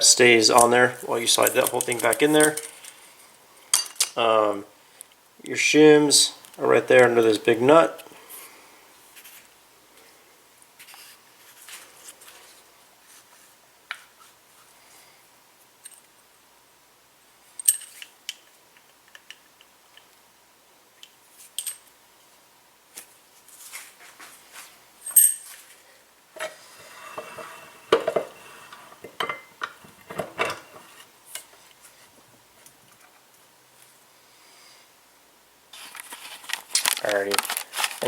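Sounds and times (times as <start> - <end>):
metal parts clinking and clattering: 1.4 - 2.9, 3.7 - 4.2, 17.6 - 18.1, 25.0 - 25.6
metal scraping: 26.4 - 31.1.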